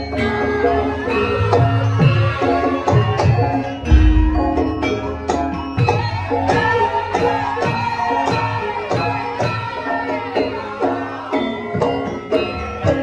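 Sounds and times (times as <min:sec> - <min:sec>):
ringing metallophone tones: 0:00.0 - 0:08.6
hand drum strokes: 0:03.9 - 0:05.0.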